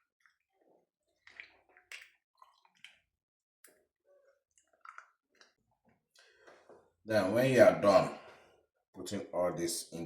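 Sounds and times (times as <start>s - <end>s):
wet squishing and dripping: 0.0s - 6.8s.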